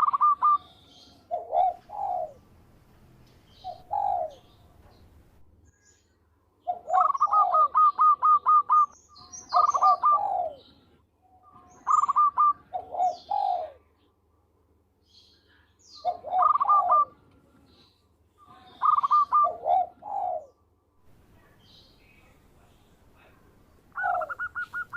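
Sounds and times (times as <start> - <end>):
dove cooing: 0.0 - 2.5, 3.6 - 4.6, 6.7 - 10.7, 11.7 - 13.9, 16.0 - 17.2, 18.7 - 20.6, 23.9 - 24.9.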